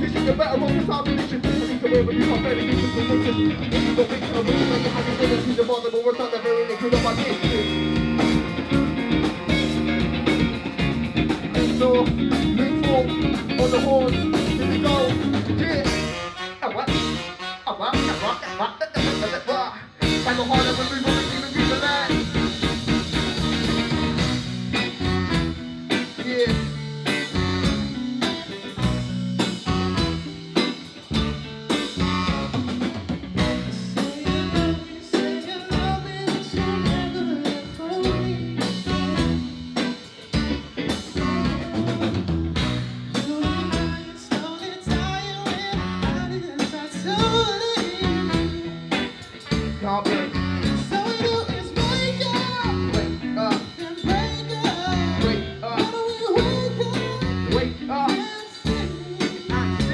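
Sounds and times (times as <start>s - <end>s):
person singing: 0.0s - 8.3s, 11.6s - 22.6s, 25.2s - 27.7s, 33.4s - 39.9s, 43.1s - 59.9s
drum kit: 0.0s - 59.9s
guitar: 0.0s - 59.9s
live band playing: 0.0s - 59.9s.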